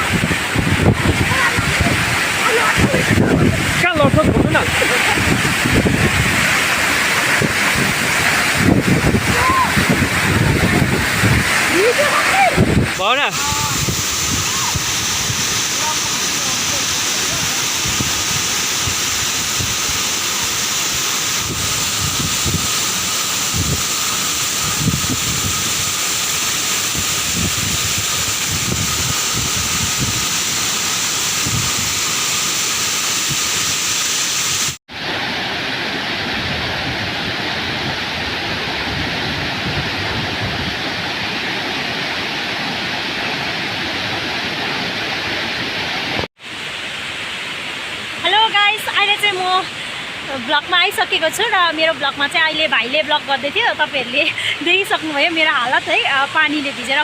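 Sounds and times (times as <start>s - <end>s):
wind buffeting microphone: 0.0s - 20.0s, 21.3s - 26.0s, 26.8s - 30.5s, 31.3s - 32.0s, 36.3s - 41.0s
waterfall rushing: 0.0s - 57.0s.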